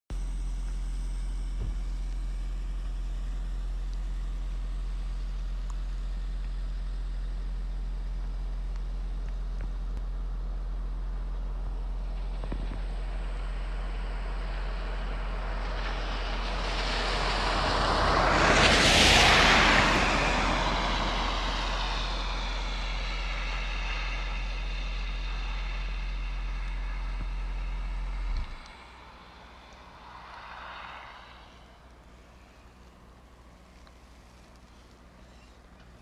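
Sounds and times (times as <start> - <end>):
steady low hum: 0.1 - 36.0
vehicle passing: 12.2 - 34.6.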